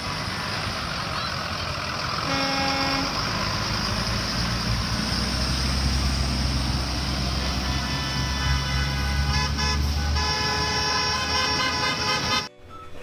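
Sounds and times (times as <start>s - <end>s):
heavy vehicle engine running: 0.0s - 12.5s
vehicle horn: 2.2s - 3.5s, 7.2s - 12.5s.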